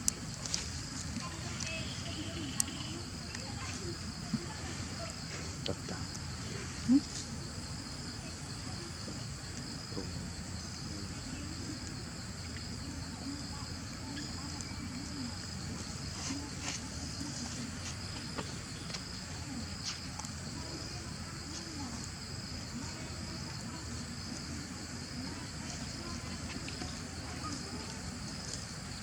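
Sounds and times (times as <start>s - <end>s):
insects chirring: 0.0s - 29.0s.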